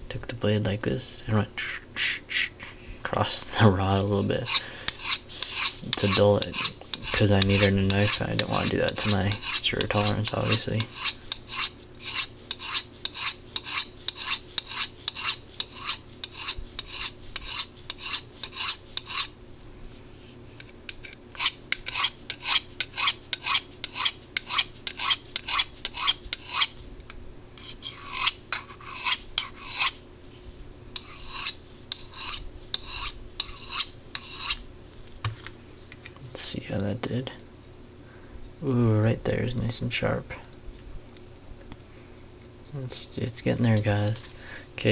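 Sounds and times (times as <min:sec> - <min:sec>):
knife scraping on sharpening rod: 0:03.9 - 0:26.8, 0:27.6 - 0:34.6, 0:42.9 - 0:44.9.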